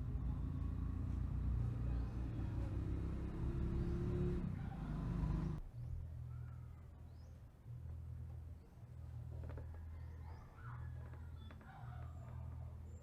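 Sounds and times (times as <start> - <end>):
engine running at low speed: 0.0 - 6.4.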